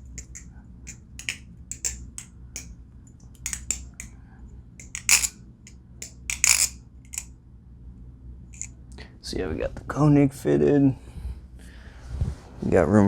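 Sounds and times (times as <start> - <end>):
knife handle clicks and clacks: 0.1 - 2.7, 3.4 - 4.1, 4.8 - 5.3, 6.0 - 7.3.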